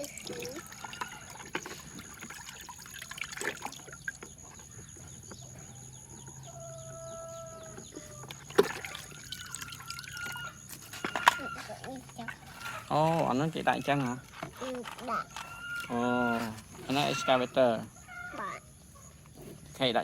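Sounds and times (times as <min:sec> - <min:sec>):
water trickling and dripping: 0:00.0 - 0:05.4, 0:08.2 - 0:12.6
chicken calling: 0:15.1 - 0:19.1.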